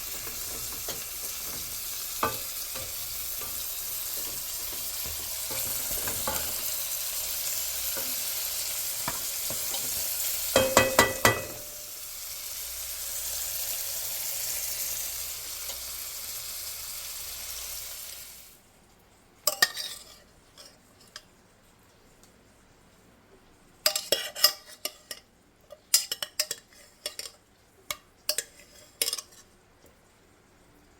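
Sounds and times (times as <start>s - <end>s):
utensil clanking against pan: 0.0s - 11.9s
food sizzling in a frying pan: 0.0s - 18.6s.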